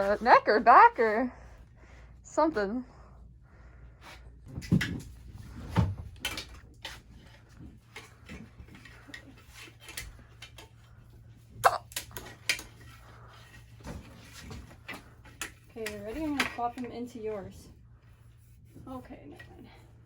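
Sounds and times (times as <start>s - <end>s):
low steady hum: 0.0s - 20.0s
knocks and clatters of handled objects: 4.4s - 17.1s.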